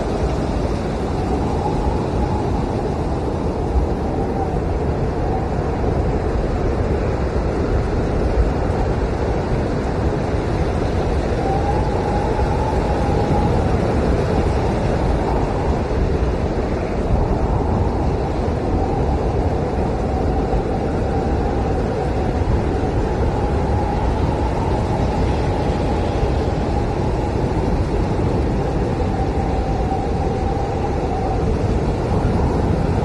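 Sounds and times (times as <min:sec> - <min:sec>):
blizzard wind howling: 0:00.0 - 0:33.0.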